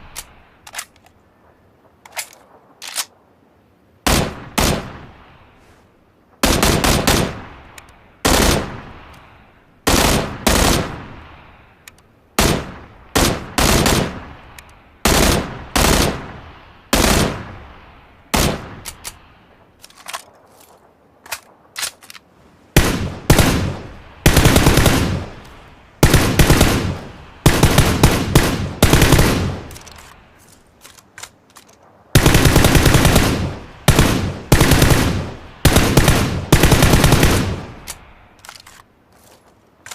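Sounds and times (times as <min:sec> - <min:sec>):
automatic gunfire with echo: 0:22.8 - 0:25.4, 0:26.0 - 0:29.9, 0:32.2 - 0:37.9.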